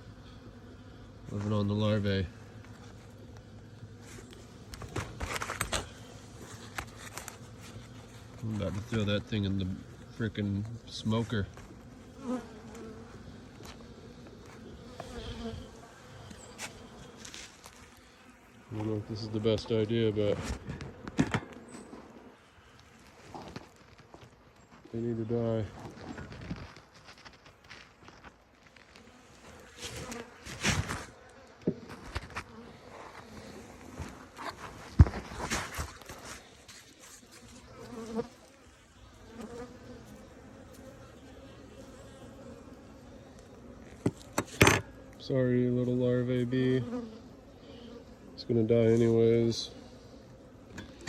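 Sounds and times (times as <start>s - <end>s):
honeybees buzzing: 0.0s - 51.0s
knocks and rustling of hive parts: 2.6s - 10.0s, 18.8s - 22.1s, 22.8s - 24.9s, 25.7s - 38.4s, 43.3s - 45.1s.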